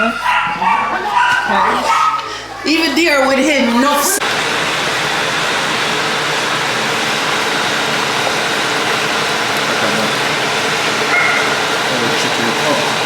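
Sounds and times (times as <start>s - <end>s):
heavy rain pouring: 4.2s - 13.0s.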